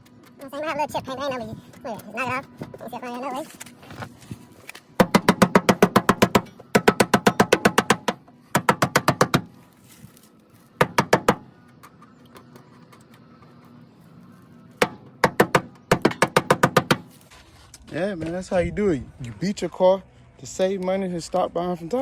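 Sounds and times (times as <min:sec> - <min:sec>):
hammer tapping on metal: 0:05.0 - 0:09.5.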